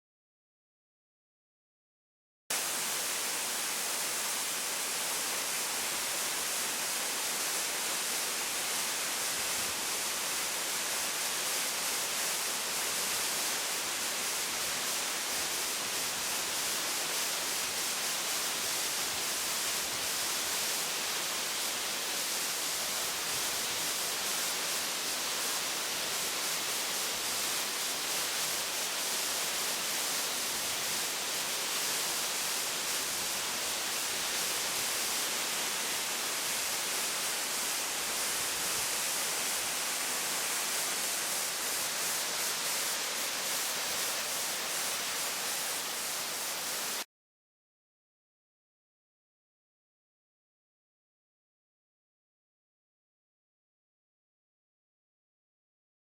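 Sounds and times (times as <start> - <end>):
waterfall hiss: 2.5 - 47.1.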